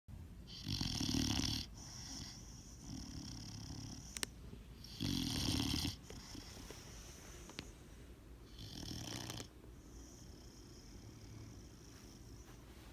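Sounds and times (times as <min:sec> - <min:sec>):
loud snoring: 0:00.5 - 0:04.1, 0:04.8 - 0:06.4, 0:08.5 - 0:11.8
soft breathing: 0:01.7 - 0:12.9.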